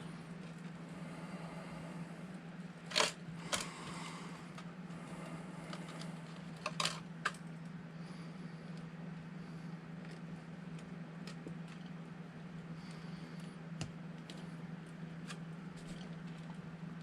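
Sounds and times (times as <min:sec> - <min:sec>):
steady low hum: 0:00.0 - 0:17.0
small plastic and metal parts rattling: 0:05.8 - 0:07.4.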